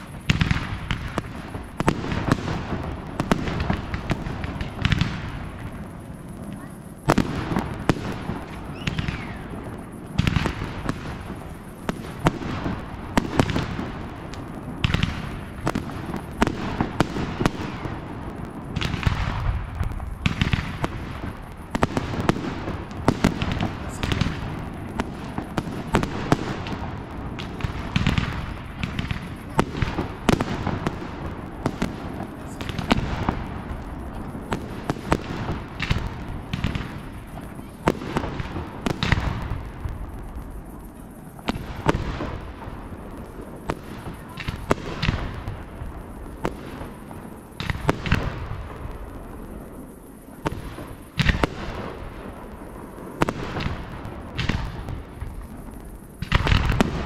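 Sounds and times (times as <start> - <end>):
fireworks bursting: 0.0 - 57.0
crowd chatter: 6.1 - 7.1, 29.2 - 35.1.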